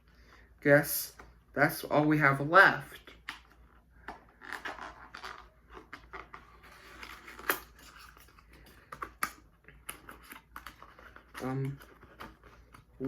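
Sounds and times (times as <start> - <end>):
packaging rustling: 3.3 - 13.0.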